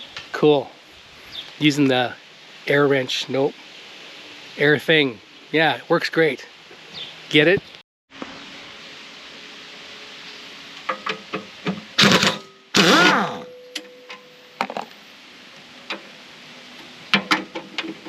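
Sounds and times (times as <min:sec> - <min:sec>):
pneumatic air wrench bursts: 0:12.0 - 0:13.4.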